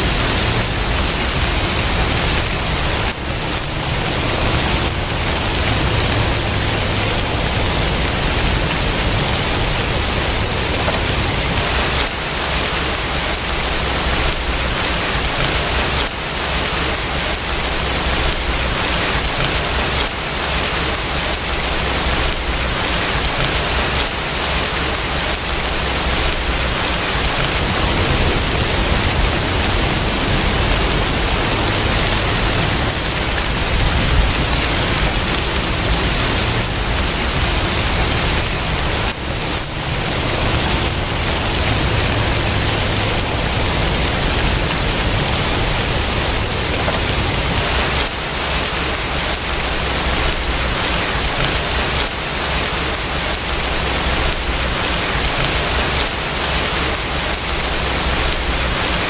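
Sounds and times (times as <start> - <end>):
steady rain hiss: 0.0 - 59.0
low rumble: 25.7 - 47.9.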